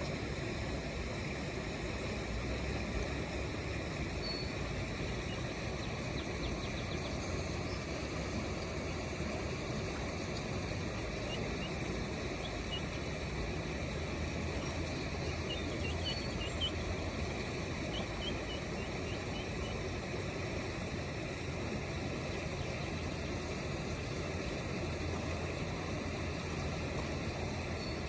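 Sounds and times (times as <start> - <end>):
ducklings peeping: 4.4 - 7.9, 10.4 - 13.4, 14.5 - 20.0, 22.3 - 23.4.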